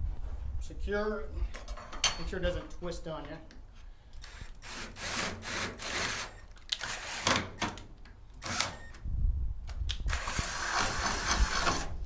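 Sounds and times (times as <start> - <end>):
power drill boring into metal: 4.2 - 7.6, 8.4 - 9.0, 10.1 - 12.0.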